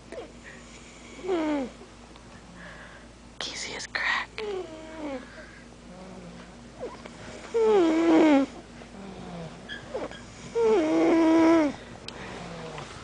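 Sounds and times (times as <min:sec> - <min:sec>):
child snoring wheezily: 0:00.2 - 0:01.8, 0:04.4 - 0:12.8.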